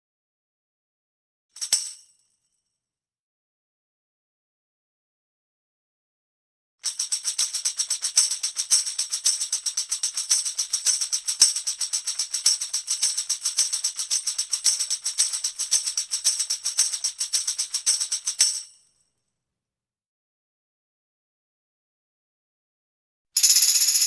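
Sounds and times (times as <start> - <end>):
tambourine shaking: 6.8 - 18.8, 23.4 - 24.0.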